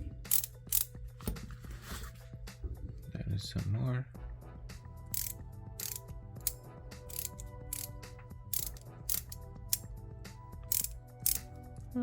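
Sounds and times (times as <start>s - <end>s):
ratchet wrench clicking: 0.2s - 1.0s, 5.1s - 10.0s, 10.6s - 11.6s.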